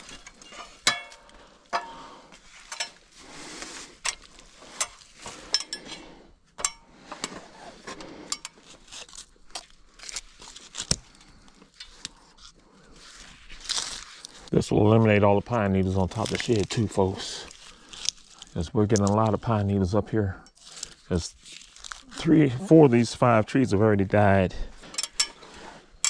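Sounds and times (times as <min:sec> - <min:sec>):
metal hardware clinking: 0:00.1 - 0:02.0, 0:02.7 - 0:03.0, 0:06.6 - 0:07.3, 0:24.9 - 0:25.4
rustling: 0:07.0 - 0:15.1, 0:20.6 - 0:22.3.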